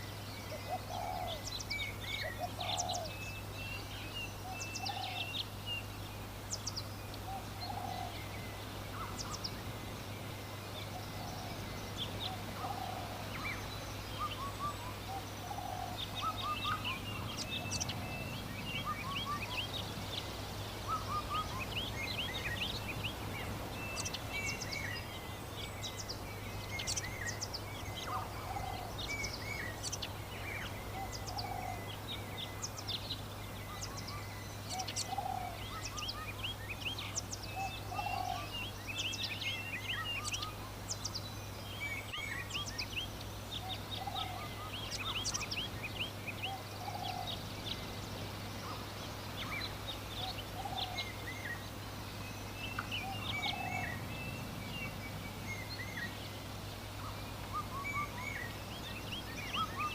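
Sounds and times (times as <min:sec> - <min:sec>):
birds chirping and calling: 0:00.0 - 0:59.9.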